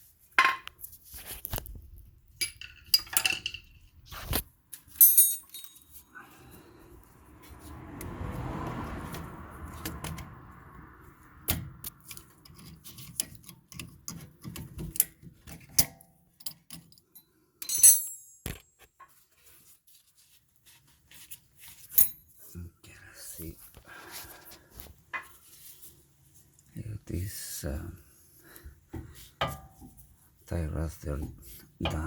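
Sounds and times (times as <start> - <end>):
metallic clicks and clinks: 5.0 - 6.0, 15.8 - 18.7.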